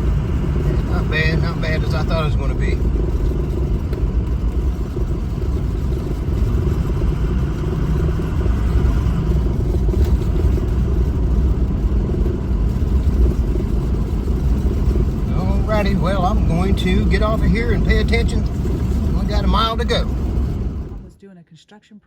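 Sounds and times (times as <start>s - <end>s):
vehicle engine and tyres driving: 0.0s - 21.2s.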